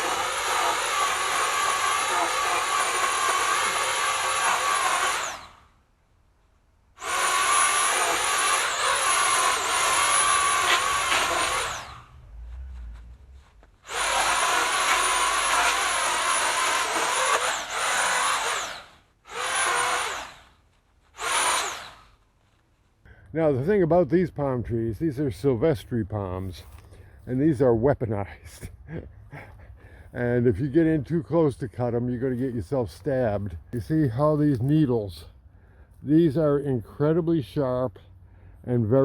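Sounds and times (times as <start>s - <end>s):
chainsaw cutting palm fronds: 0.0s - 5.6s, 7.0s - 12.1s, 13.8s - 20.5s, 21.2s - 22.1s.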